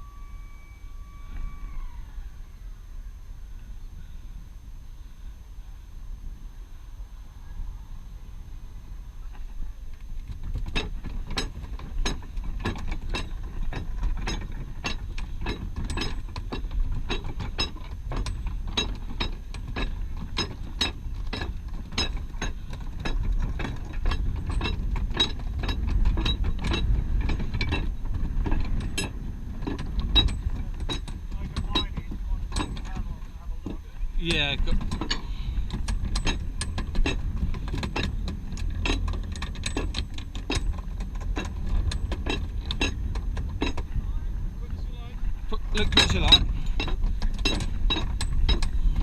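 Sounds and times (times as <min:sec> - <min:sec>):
low rumble: 0:00.0 - 0:49.0
windlass ratchet clicking: 0:10.0 - 0:44.1, 0:45.2 - 0:49.0.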